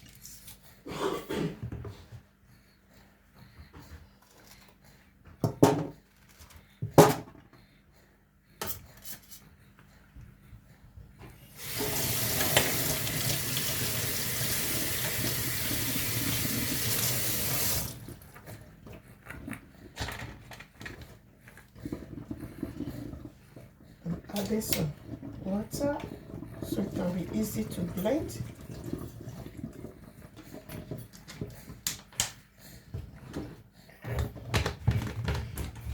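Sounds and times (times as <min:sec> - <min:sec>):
water tap running: 0:11.5 - 0:18.1.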